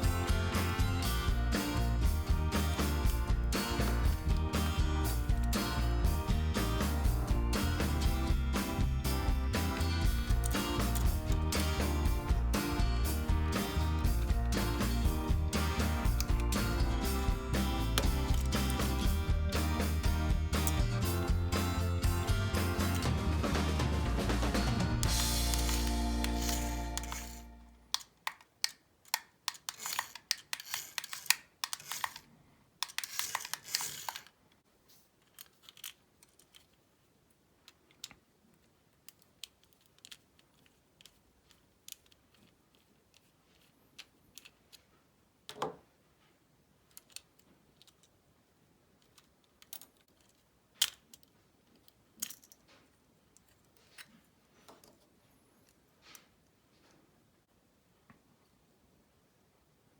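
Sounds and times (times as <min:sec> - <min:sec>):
plastic parts clicking: 0:25.5 - 0:34.6, 0:35.2 - 0:36.9, 0:37.6 - 0:44.9, 0:46.8 - 0:48.2, 0:49.0 - 0:55.0.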